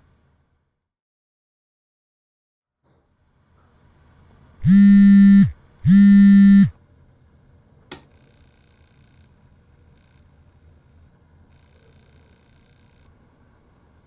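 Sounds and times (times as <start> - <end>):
faint hum: 3.4 - 14.0.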